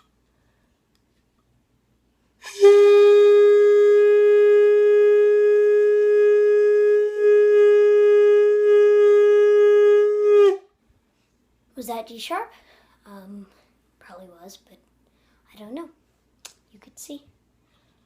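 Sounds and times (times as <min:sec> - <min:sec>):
wind instrument long note: 0:02.4 - 0:10.6.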